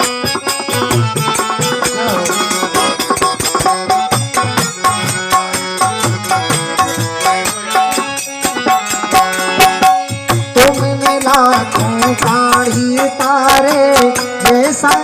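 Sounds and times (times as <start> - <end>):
hand drums beating: 0.0 - 15.0.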